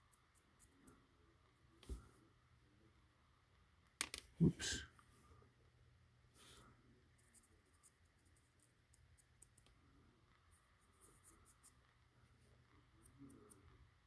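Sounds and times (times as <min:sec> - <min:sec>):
faint ticks and scratches: 0:00.0 - 0:02.2, 0:07.0 - 0:14.0.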